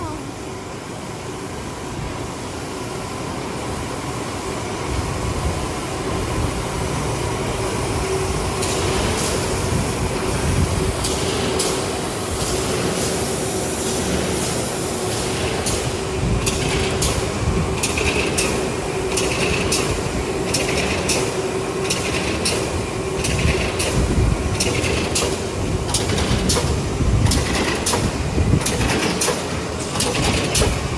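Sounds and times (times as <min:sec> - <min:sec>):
sharp machine clacks: 0:08.6 - 0:09.6, 0:11.0 - 0:30.9
box folding machine running: 0:08.6 - 0:30.9.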